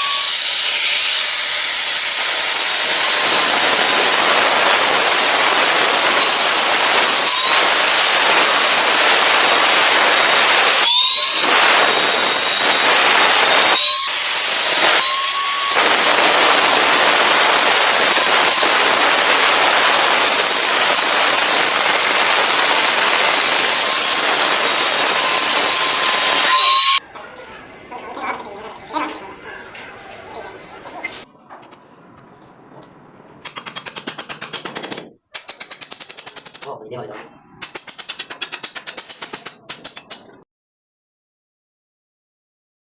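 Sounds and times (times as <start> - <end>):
welding arc crackling hiss: 0.0 - 27.0, 33.4 - 36.7.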